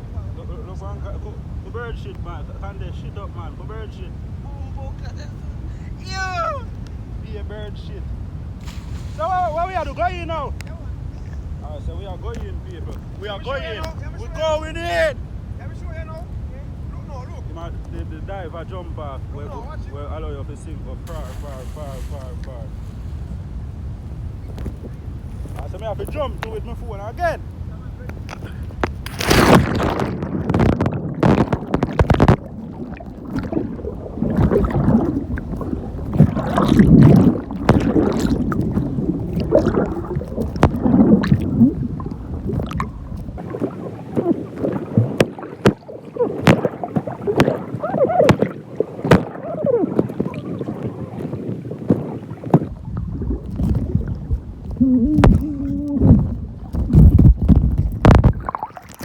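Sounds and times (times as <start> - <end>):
water splashing and gurgling: 8.5 - 10.2, 21.1 - 27.2, 28.2 - 59.0.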